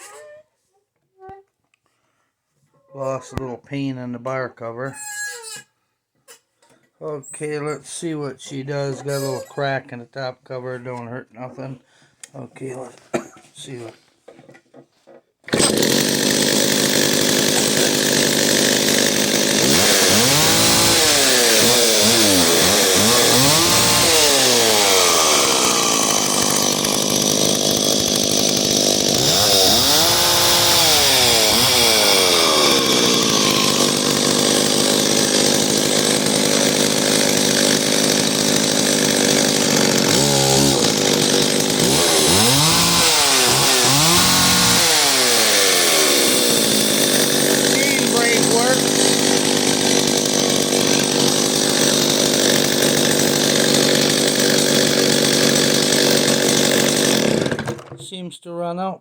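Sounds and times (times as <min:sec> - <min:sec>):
chainsaw revving: 0:15.5 - 0:58.0.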